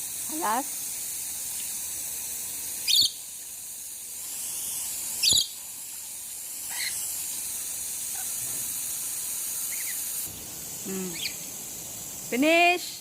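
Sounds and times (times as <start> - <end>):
shower spraying water: 0.0 - 13.0
parrot squawking: 6.7 - 7.0, 11.1 - 11.4.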